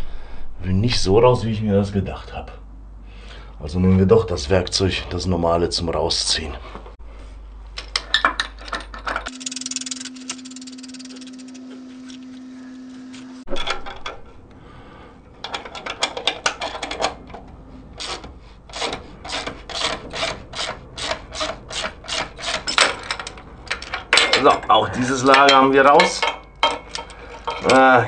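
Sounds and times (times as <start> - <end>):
metal scraping and rubbing: 8.6 - 14.4, 15.4 - 28.0.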